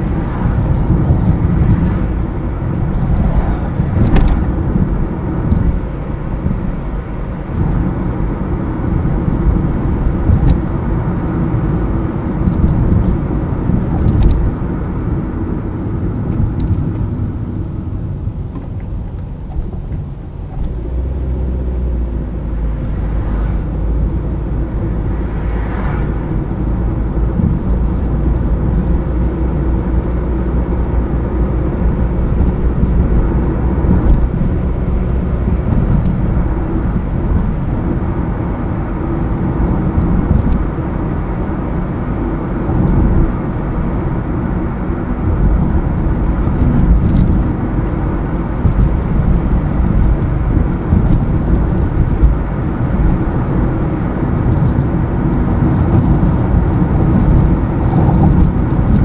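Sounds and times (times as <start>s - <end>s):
car tyre and engine noise: 0.0s - 59.0s
deep low hum: 0.0s - 59.0s.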